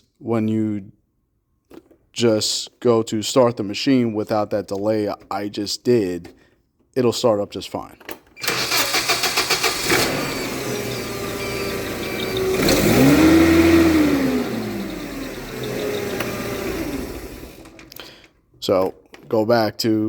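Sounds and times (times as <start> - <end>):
forklift engine cranking: 8.4 - 18.3
engine idling and revving: 8.6 - 17.9.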